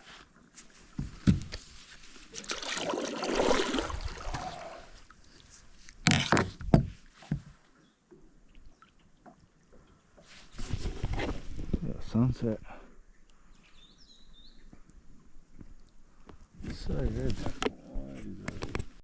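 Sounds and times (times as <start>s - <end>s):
paddle swishing through water: 0.0s - 7.8s.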